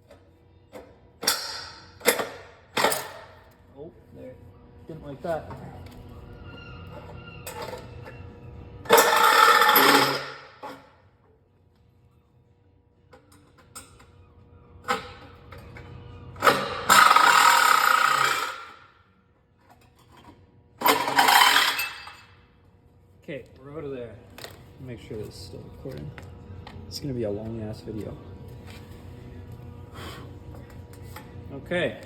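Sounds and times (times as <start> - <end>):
power saw cutting aluminum: 8.9 - 10.4, 16.4 - 18.8.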